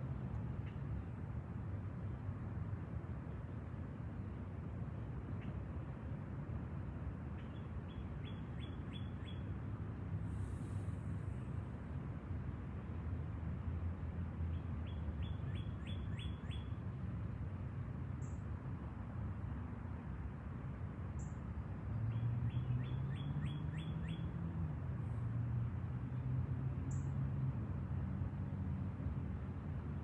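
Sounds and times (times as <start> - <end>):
background hiss with low hum: 0.0 - 22.0.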